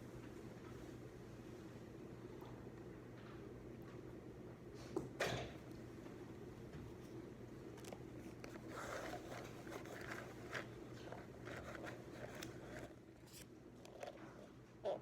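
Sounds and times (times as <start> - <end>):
paper rustling: 8.3 - 13.5.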